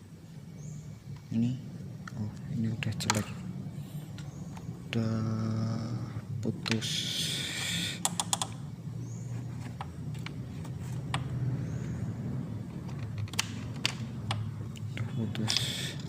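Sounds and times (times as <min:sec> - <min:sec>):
steady low hum: 0:00.0 - 0:16.0
fuses clicking and rattling: 0:08.0 - 0:08.6, 0:12.6 - 0:16.0.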